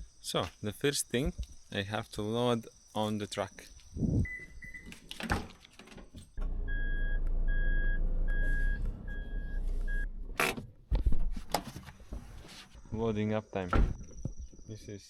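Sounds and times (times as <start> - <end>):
truck engine running: 6.4 - 10.4
reversing alarm beeping: 6.6 - 10.1.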